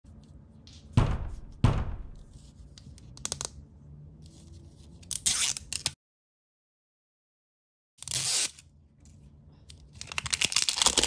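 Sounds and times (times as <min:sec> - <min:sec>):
sudden thump: 0:00.9 - 0:02.4
plastic packaging being torn open: 0:09.9 - 0:11.0.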